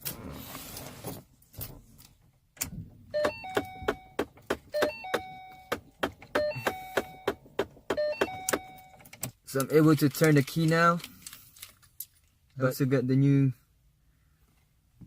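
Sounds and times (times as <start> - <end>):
car warning chime: 3.1 - 9.2.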